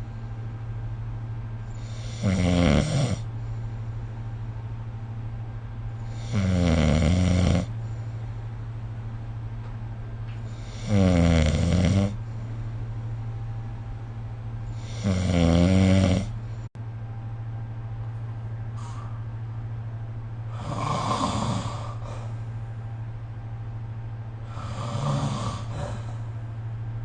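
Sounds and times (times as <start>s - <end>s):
steady low hum: 0.0s - 27.0s
person snoring: 1.7s - 3.3s, 6.0s - 7.8s, 10.5s - 12.2s, 14.7s - 16.4s, 20.5s - 22.3s, 24.4s - 26.3s.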